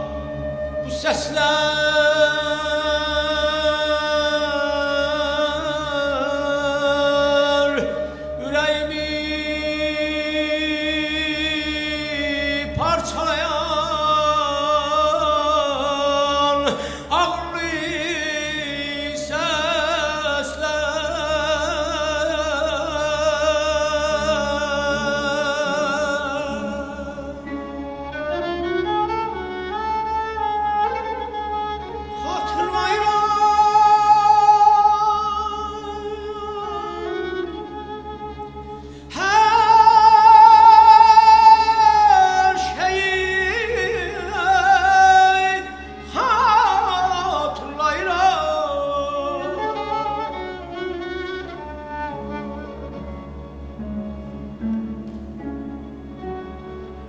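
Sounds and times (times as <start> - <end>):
bowed string line: 0.0 - 57.0
low orchestral accompaniment: 0.0 - 57.0
man singing with trilled ornaments: 0.9 - 27.5, 39.1 - 50.4.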